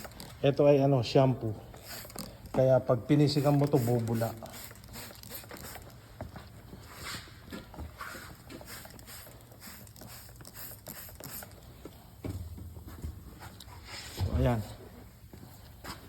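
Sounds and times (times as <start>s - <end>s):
spray bottle hissing squirts: 1.8s - 2.4s, 3.3s - 6.0s, 8.0s - 11.6s.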